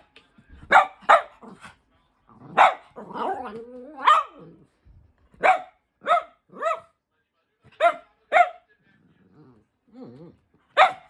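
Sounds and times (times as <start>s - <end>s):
dog barking: 0.7s - 1.6s, 2.5s - 4.4s, 5.4s - 7.0s, 7.8s - 8.7s, 10.7s - 11.0s.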